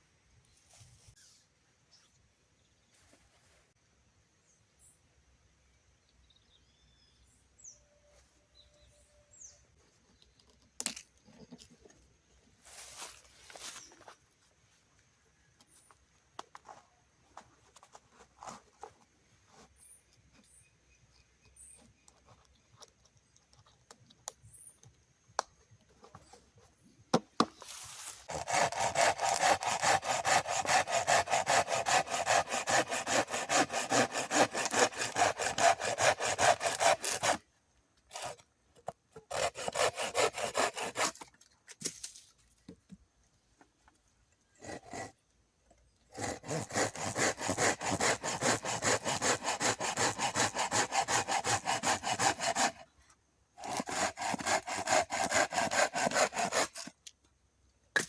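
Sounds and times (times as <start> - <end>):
hand saw cutting wood: 27.5 - 37.5, 38.1 - 41.4, 44.6 - 45.2, 46.1 - 53.0, 53.6 - 57.0.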